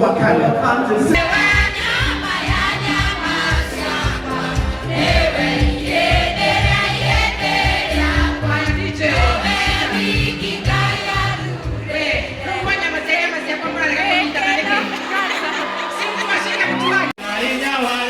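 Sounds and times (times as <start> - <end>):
group of voices singing: 1.1 - 17.2
pulsing bass line: 1.2 - 12.8.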